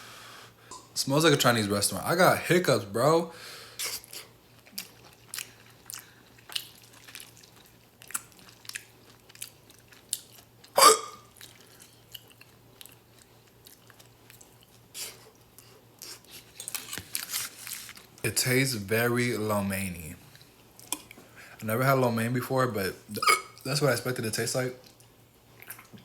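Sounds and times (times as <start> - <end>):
chewing noodles: 3.9 - 18.1, 24.8 - 26.0
person hiccuping: 10.8 - 11.3, 23.2 - 23.6.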